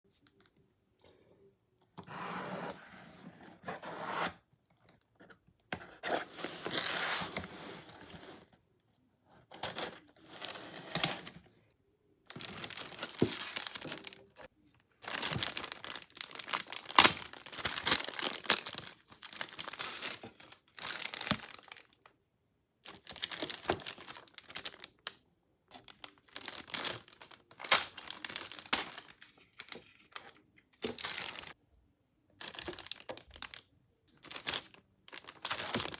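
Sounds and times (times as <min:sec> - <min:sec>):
packaging tearing and crinkling: 0:12.3 - 0:14.4, 0:15.0 - 0:21.9, 0:22.9 - 0:25.1, 0:25.8 - 0:30.1, 0:30.8 - 0:31.6, 0:34.3 - 0:35.9.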